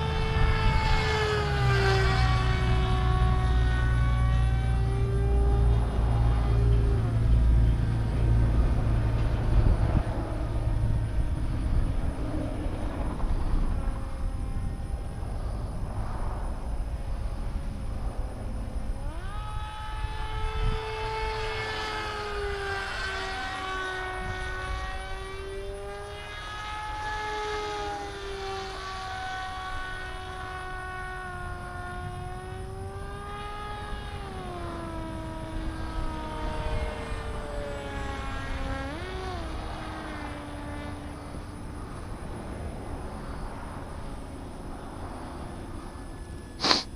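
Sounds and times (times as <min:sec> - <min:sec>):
low rumbling noise: 0:00.0 - 0:27.4
propeller whine: 0:00.0 - 0:46.9.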